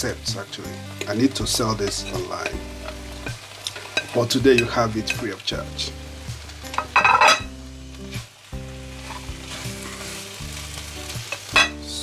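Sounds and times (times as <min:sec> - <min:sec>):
background music: 0:00.0 - 0:12.0
sauce sizzling in a pan: 0:00.0 - 0:12.0
utensil scraping a pan: 0:01.8 - 0:05.2, 0:06.7 - 0:07.5, 0:09.0 - 0:10.4.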